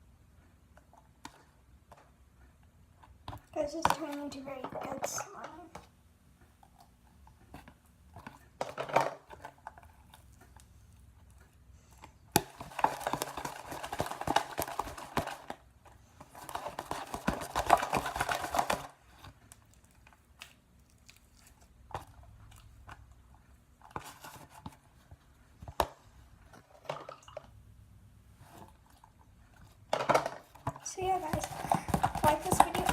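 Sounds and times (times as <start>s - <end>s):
slime squishing: 19.0s - 25.0s.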